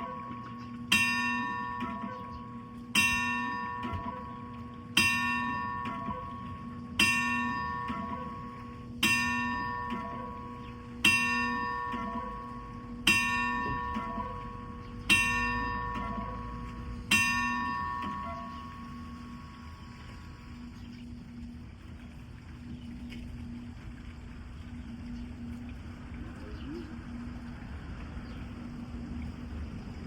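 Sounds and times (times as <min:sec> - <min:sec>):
large clock bell striking: 0:00.0 - 0:20.2.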